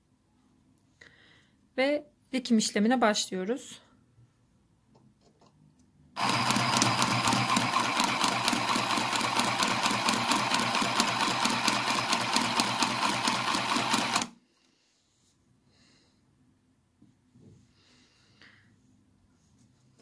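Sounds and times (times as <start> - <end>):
sewing machine stitching: 6.2 - 14.4.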